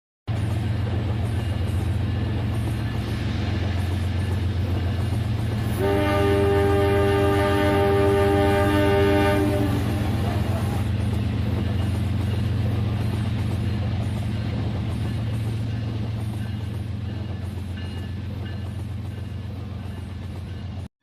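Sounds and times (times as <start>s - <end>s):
toy train electronic horn: 5.7s - 10.5s.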